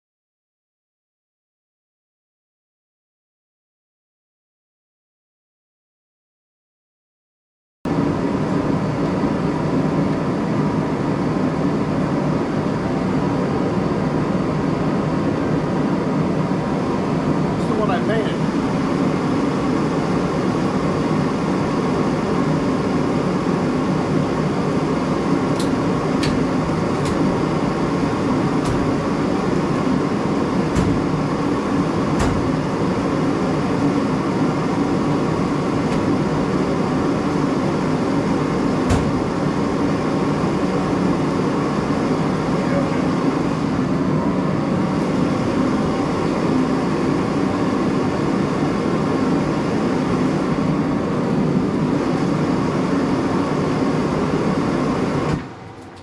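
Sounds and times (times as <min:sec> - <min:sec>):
machine roaring: 0:07.9 - 0:56.0.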